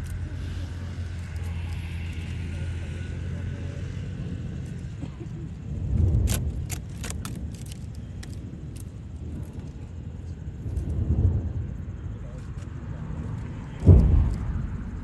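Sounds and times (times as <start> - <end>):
low rumble: 0.0 - 15.0
firework boom: 13.8 - 15.0.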